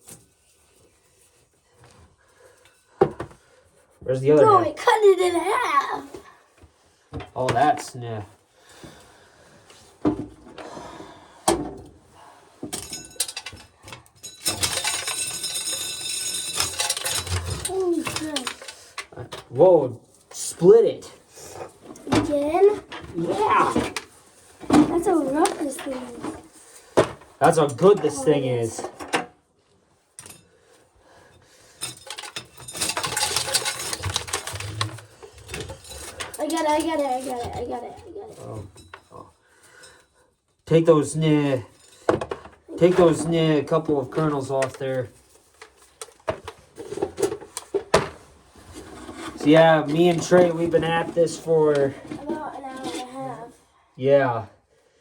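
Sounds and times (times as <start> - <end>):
corn sheller rattling clatter: 14.2 - 18.9, 31.9 - 37.6.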